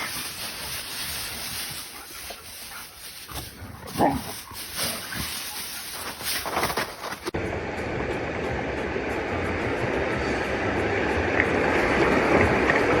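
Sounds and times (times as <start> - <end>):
steady rushing noise: 4.3 - 13.0.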